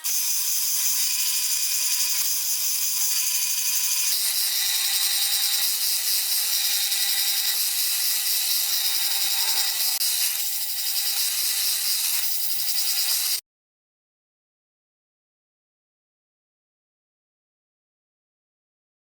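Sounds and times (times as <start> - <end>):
power tool whining and grinding: 0.0 - 13.4.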